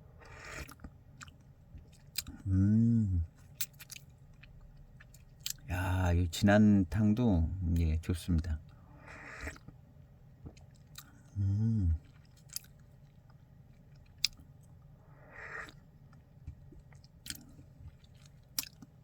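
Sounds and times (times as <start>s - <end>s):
mouth clicks and lip smacks: 0.3s - 2.4s
man humming low mmm: 2.3s - 3.3s, 11.3s - 12.1s.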